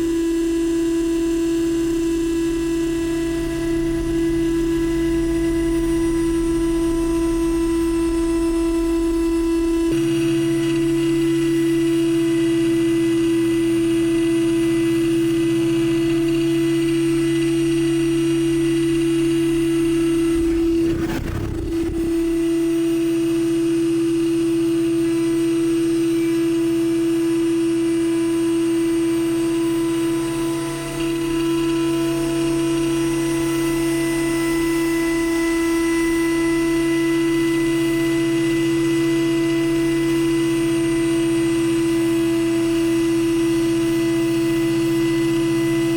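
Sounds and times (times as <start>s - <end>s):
spindle whine: 1.8s - 22.9s
low hum: 15.7s - 22.8s
brief rumble: 19.2s - 22.7s.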